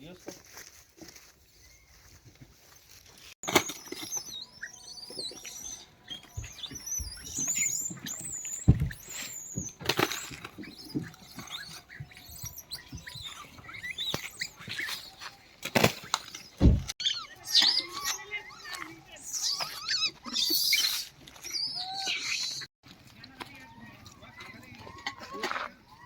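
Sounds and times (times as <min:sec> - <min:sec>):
monkeys squeaking and squealing: 0:03.4 - 0:22.7, 0:23.6 - 0:26.0
sharp knocks and thumps: 0:06.2 - 0:14.3, 0:16.6 - 0:17.0.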